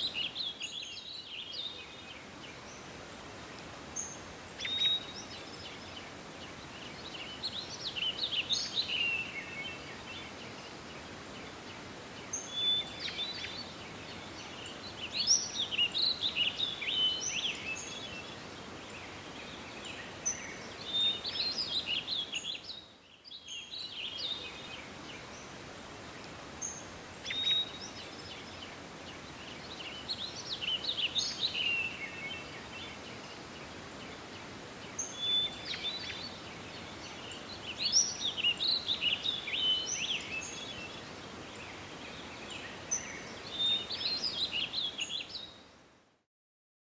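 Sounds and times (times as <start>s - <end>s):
songbird singing: 0.0s - 45.9s
steady outdoor hiss: 0.0s - 46.2s.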